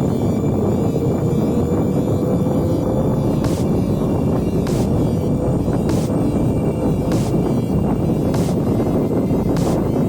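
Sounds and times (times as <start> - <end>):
background music with steady beat: 0.0 - 10.0
hissing cymbal hit: 3.4 - 3.8, 4.7 - 5.1, 5.8 - 6.2, 7.0 - 8.7.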